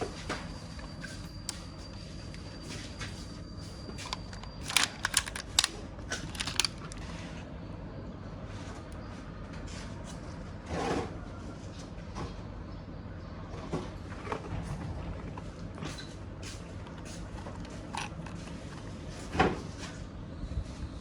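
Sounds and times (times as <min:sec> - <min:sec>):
plastic toy parts clicking: 0:04.0 - 0:07.0.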